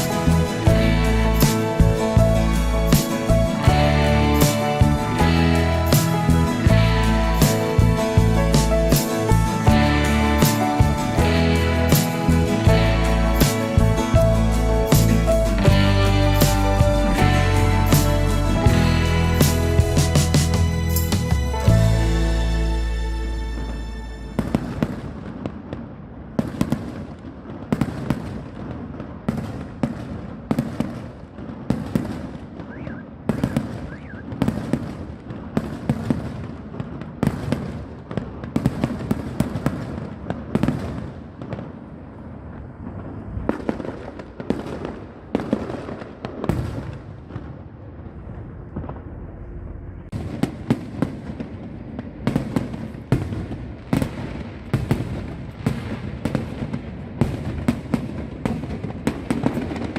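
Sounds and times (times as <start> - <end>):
low rumble: 0.2 - 25.3, 47.8 - 50.7.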